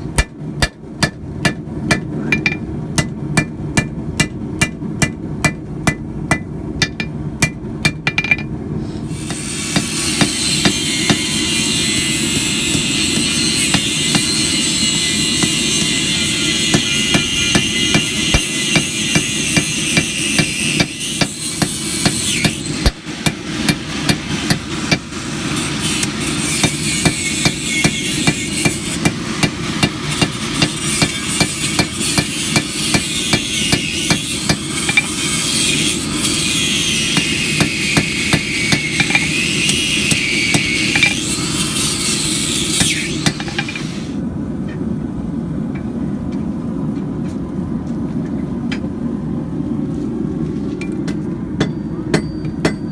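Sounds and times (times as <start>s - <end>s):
hammer blows on anvil: 9.2s - 25.1s, 36.5s - 41.7s, 51.6s - 52.9s.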